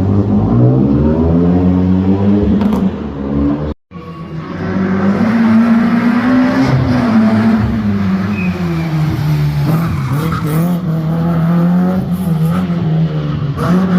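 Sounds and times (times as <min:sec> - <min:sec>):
racing engine at high revs: 0:00.0 - 0:13.9
tyres skidding and squealing: 0:03.4 - 0:13.9.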